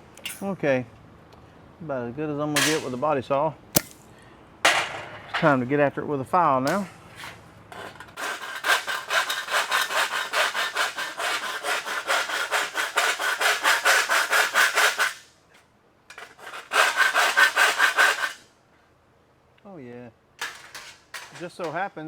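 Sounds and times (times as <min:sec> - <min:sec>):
hand file rasping on sheet metal: 0:07.2 - 0:15.3, 0:16.1 - 0:18.4.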